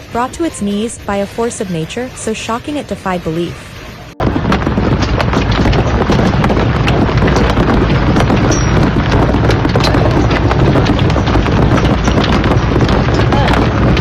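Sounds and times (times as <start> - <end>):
hailstones clattering: 4.2 - 14.0.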